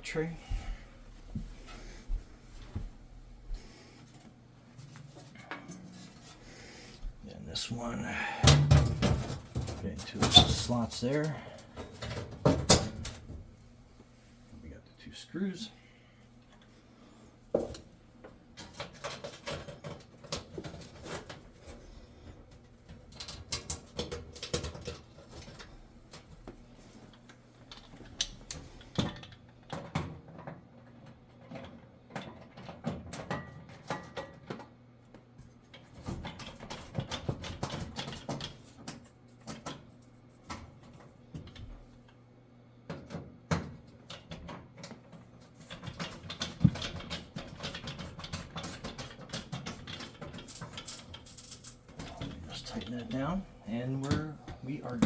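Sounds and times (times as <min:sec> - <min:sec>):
low steady hum: 0:00.0 - 0:18.9.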